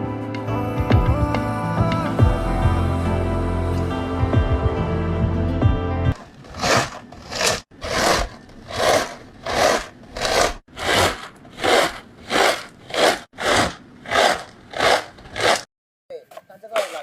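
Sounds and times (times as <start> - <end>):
rhythmic scraping strokes: 6.2 - 15.7.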